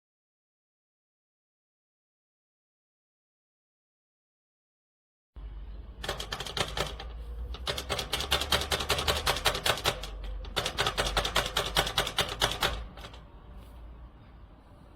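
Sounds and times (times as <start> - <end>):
rapid sharp clicks: 6.0 - 13.2.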